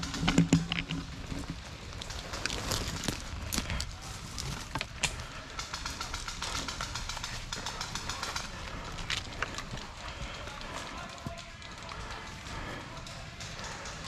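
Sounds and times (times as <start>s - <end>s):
sharp clicks: 4.8s - 10.2s.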